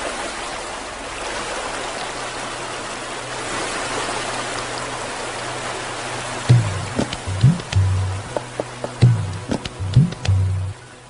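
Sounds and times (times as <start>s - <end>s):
stream water flowing: 0.0s - 11.0s.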